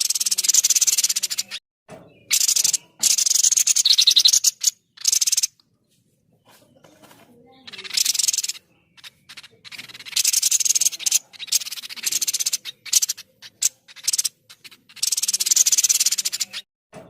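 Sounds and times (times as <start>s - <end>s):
bird rattling chatter: 2.3s - 5.5s, 6.9s - 16.6s.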